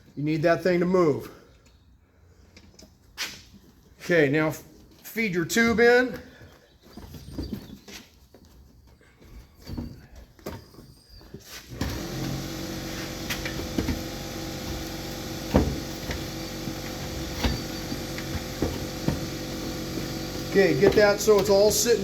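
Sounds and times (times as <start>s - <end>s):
handling rubber inner tube: 2.5s - 22.0s
steady motor hum: 11.8s - 22.0s.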